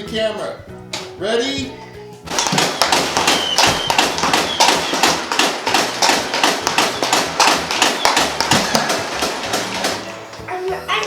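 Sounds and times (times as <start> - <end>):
toy blaster firing full-auto: 2.3 - 10.2
darts striking camera: 2.3 - 10.3.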